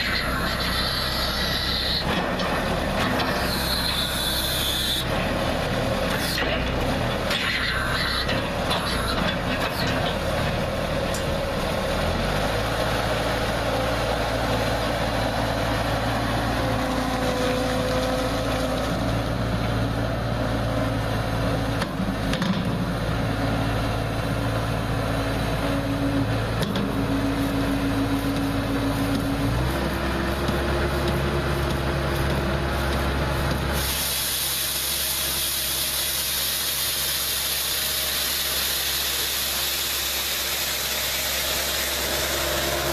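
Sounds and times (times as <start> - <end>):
loader engine running: 0.0 - 42.9
loud hiss: 33.7 - 42.9.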